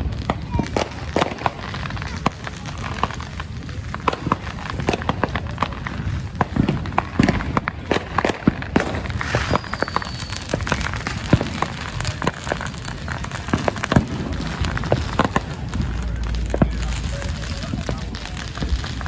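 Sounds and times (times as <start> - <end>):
firecrackers popping: 0.0 - 19.0
faint high whistle: 9.4 - 10.6.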